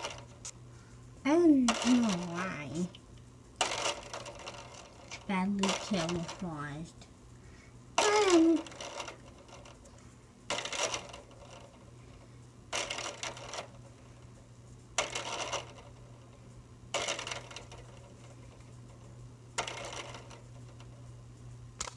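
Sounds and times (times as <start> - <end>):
ceiling fan motor hum: 0.0 - 21.9
jingling metallic rattle: 3.6 - 6.8.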